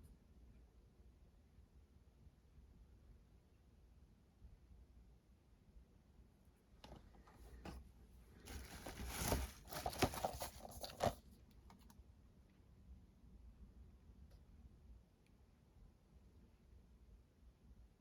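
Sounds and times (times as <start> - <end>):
packaging crinkling and tearing: 8.5 - 11.2.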